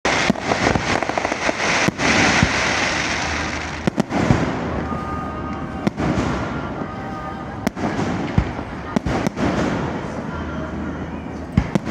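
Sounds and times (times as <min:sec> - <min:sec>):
fireworks bangs: 0:00.0 - 0:11.9
fireworks crackling and popping: 0:00.0 - 0:11.9.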